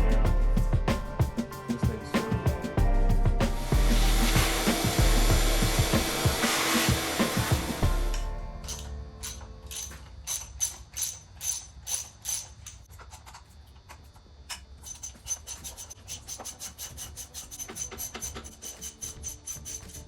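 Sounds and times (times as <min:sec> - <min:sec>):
scrubbing strokes on engine: 0:03.4 - 0:08.3.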